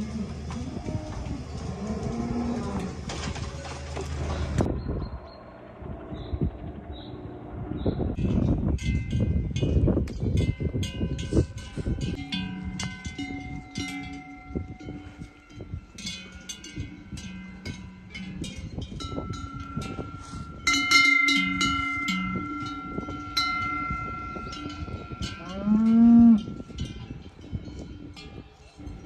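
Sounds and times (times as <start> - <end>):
cow mooing: 0.0 - 3.1, 25.4 - 26.6
cowbells clanking: 8.2 - 29.0.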